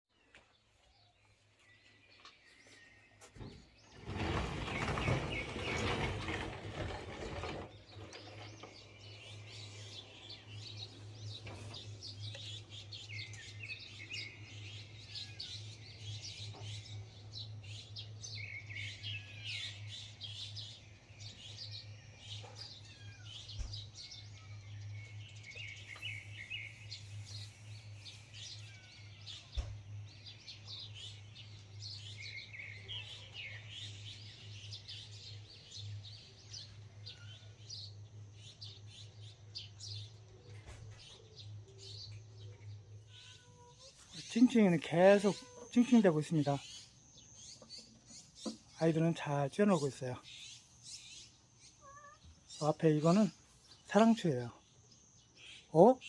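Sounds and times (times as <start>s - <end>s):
small birds chirping: 0.1s - 56.0s
loud rustling: 3.9s - 9.2s.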